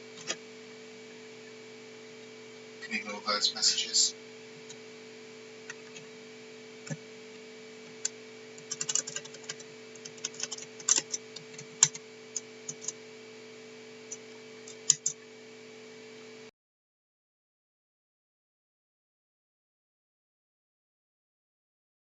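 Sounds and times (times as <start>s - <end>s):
steady electrical hum: 0.0s - 16.5s
computer keyboard typing: 8.0s - 13.0s, 14.1s - 15.2s.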